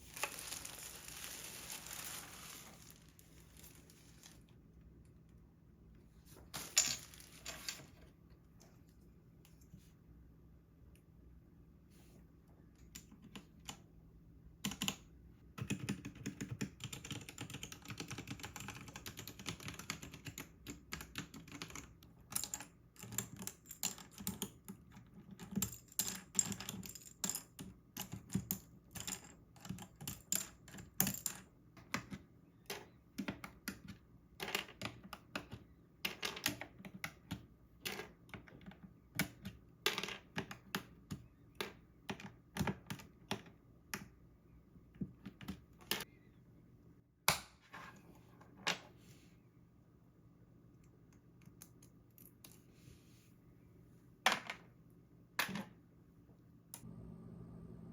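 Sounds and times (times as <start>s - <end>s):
mechanical keyboard typing: 14.6s - 15.0s, 15.6s - 24.6s.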